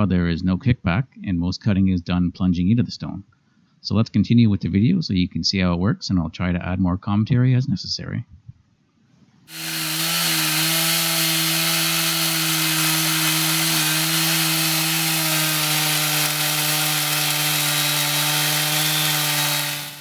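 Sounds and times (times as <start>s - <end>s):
chainsaw cutting stone: 9.5s - 20.0s.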